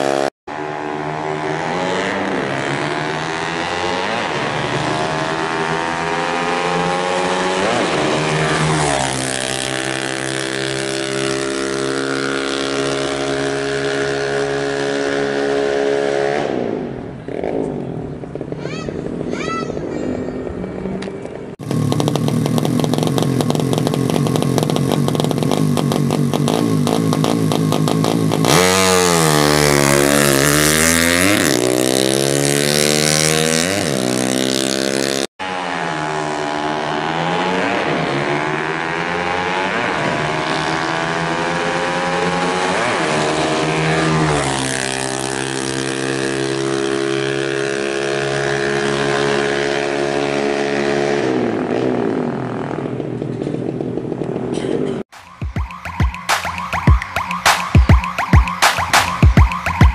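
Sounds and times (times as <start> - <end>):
motorcycle engine revving: 0.0 - 19.3, 20.4 - 59.9.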